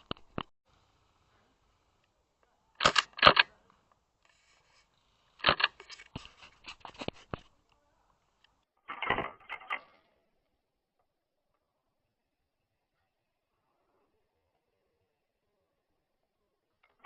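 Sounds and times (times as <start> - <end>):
airsoft gun shots: 2.8 - 3.4.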